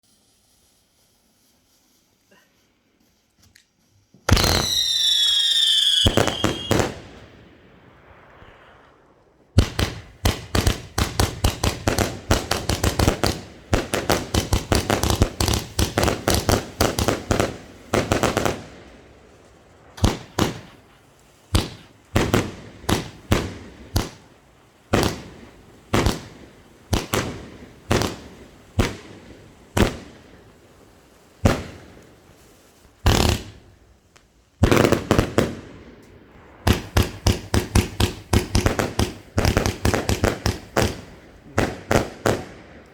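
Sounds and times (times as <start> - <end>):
falling firework whistle: 4.1 - 9.6
firework bang: 4.3 - 18.6, 19.8 - 24.2
firework shots volley: 4.3 - 33.9, 34.6 - 42.9.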